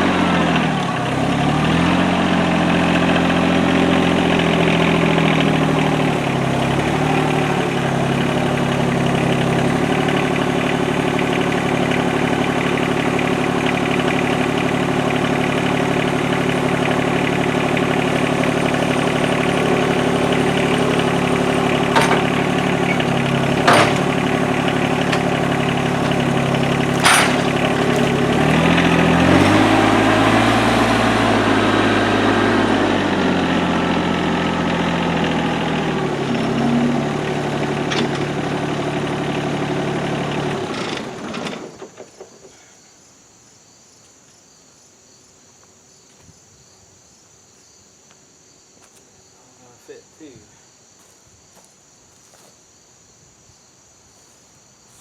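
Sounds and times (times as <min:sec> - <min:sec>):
small gasoline engine running: 0:00.0 - 0:42.6.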